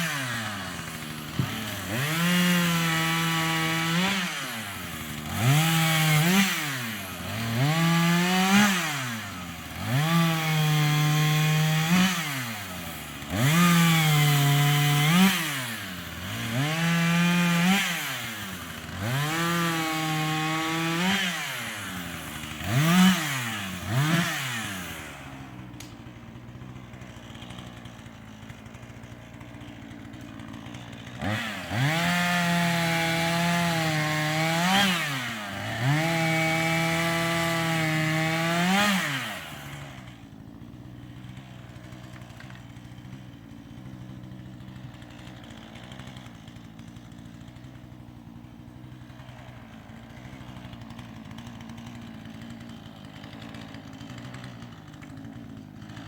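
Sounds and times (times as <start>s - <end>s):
chainsaw revving and cutting wood: 0.0s - 56.0s.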